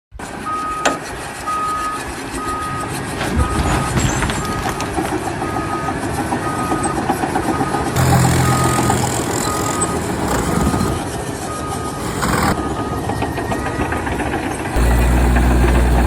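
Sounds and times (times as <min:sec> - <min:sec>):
reversing alarm beeping: 0:00.4 - 0:14.2, 0:14.8 - 0:16.0
engine running: 0:08.0 - 0:11.0, 0:14.8 - 0:16.0.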